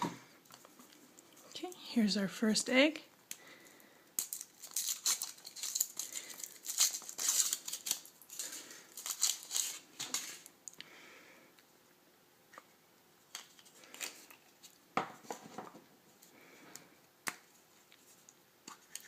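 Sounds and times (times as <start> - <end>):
foil wrapper crinkling: 4.2 - 10.5.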